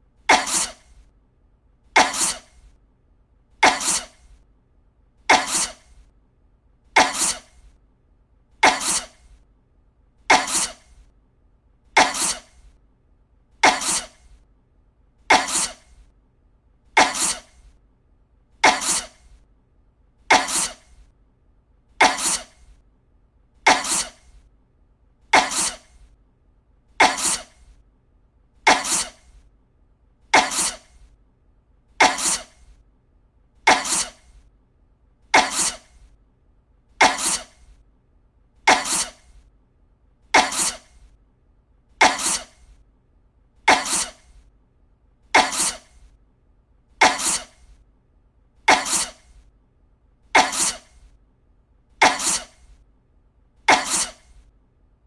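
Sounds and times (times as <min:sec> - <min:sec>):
harsh coughs: 0:00.3 - 0:01.0, 0:02.0 - 0:02.7, 0:03.6 - 0:04.4, 0:05.3 - 0:06.0, 0:07.0 - 0:07.7, 0:08.6 - 0:09.4, 0:10.3 - 0:11.1, 0:12.0 - 0:12.7, 0:13.6 - 0:14.4, 0:15.3 - 0:16.0, 0:17.0 - 0:17.7, 0:18.6 - 0:19.4, 0:20.3 - 0:21.1, 0:22.0 - 0:22.7, 0:23.7 - 0:24.4, 0:25.3 - 0:26.1, 0:27.0 - 0:27.8, 0:28.7 - 0:29.4, 0:30.3 - 0:31.1, 0:32.0 - 0:32.8, 0:33.6 - 0:34.4, 0:35.3 - 0:36.1, 0:37.0 - 0:37.7, 0:38.7 - 0:39.4, 0:40.4 - 0:41.1, 0:42.0 - 0:42.8, 0:43.7 - 0:44.4, 0:45.4 - 0:46.1, 0:47.0 - 0:47.8, 0:48.6 - 0:49.4, 0:50.4 - 0:51.1, 0:52.0 - 0:52.8, 0:53.6 - 0:54.4.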